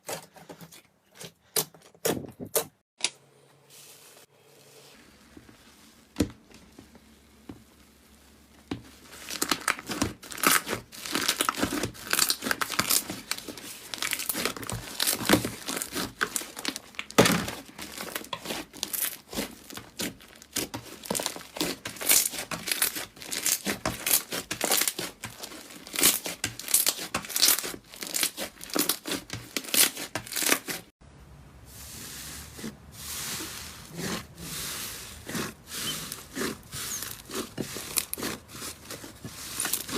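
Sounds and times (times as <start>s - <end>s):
slime squeezed crackling: 9.1s - 30.8s.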